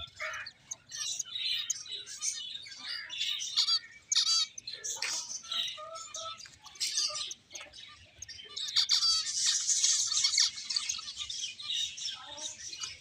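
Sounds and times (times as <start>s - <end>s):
finches chirping: 0.0s - 13.0s.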